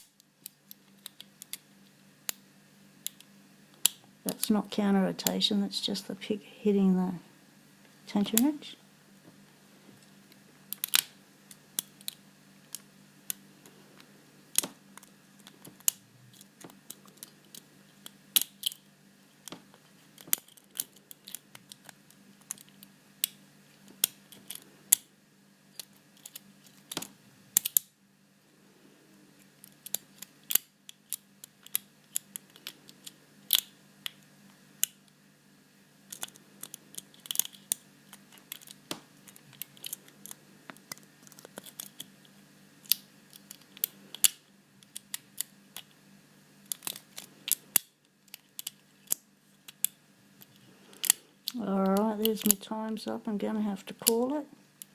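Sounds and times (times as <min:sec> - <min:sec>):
lock pick clicking and scraping: 0:18.4 - 0:18.8, 0:20.2 - 0:23.4, 0:25.8 - 0:27.9, 0:36.1 - 0:42.1, 0:46.7 - 0:52.6.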